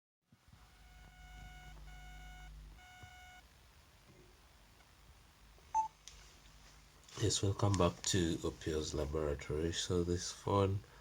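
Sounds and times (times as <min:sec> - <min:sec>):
faint low hum: 0:00.3 - 0:11.0
electronic beeps: 0:00.7 - 0:03.4, 0:05.7 - 0:05.9.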